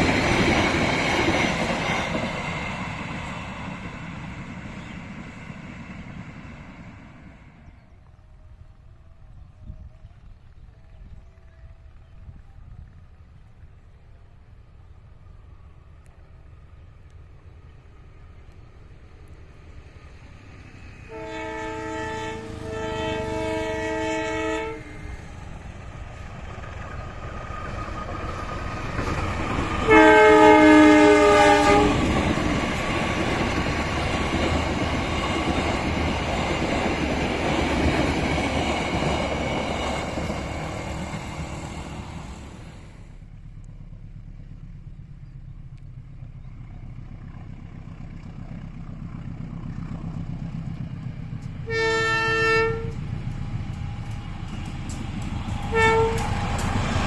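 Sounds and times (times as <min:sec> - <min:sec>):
train running past: 0:00.0 - 0:57.0
locomotive horn blasts: 0:21.1 - 0:25.4, 0:29.9 - 0:32.1, 0:51.6 - 0:53.0, 0:55.7 - 0:56.4.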